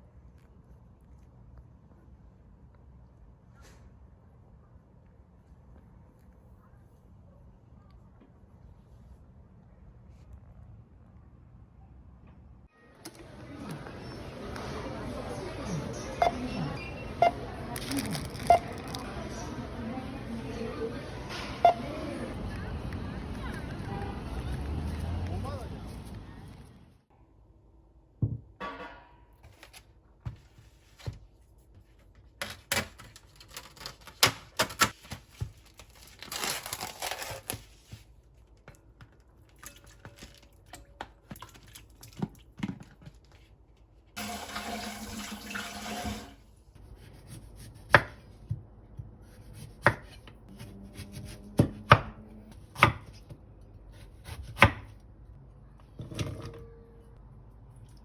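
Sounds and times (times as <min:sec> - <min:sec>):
dishes and utensils handled: 0:55.8 - 0:57.2.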